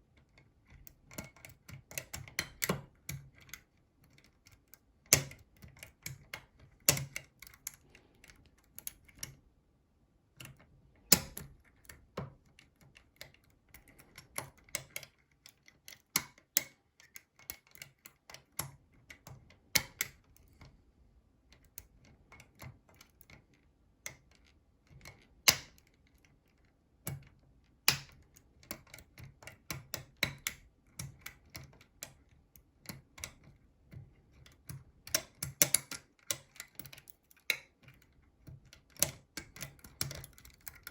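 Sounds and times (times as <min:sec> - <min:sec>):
metal tools clicking in a lock: 0:34.4 - 0:38.0, 0:38.6 - 0:40.9.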